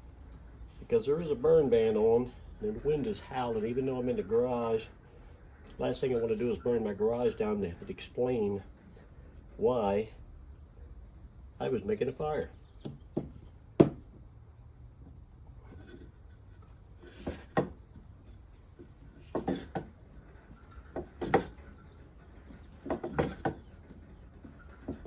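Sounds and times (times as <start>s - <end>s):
wooden knocks and rubbing: 12.4s - 14.3s, 15.0s - 25.0s.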